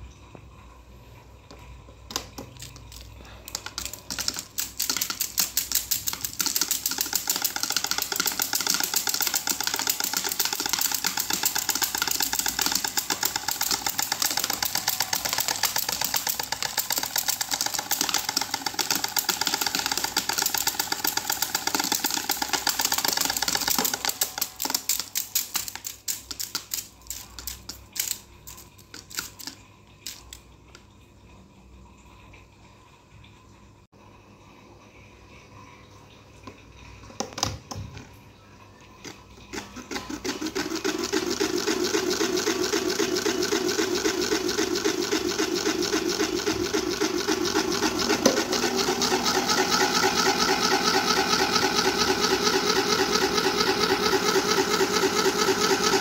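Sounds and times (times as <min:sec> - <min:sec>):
electric fan clattering: 0:02.1 - 0:30.4, 0:39.0 - 0:56.0.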